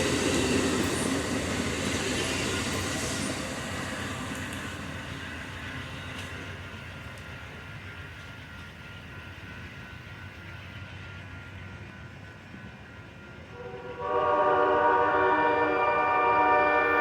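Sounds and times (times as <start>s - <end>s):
train rolling with low rumble: 0.0s - 17.0s
locomotive horn blowing: 13.5s - 17.0s.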